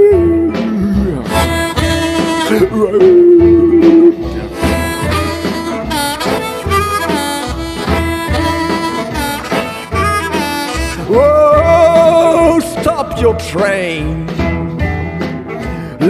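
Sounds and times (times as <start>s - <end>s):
low repeating backing pulse: 0.0s - 5.9s
blues harmonica riff: 0.0s - 15.0s.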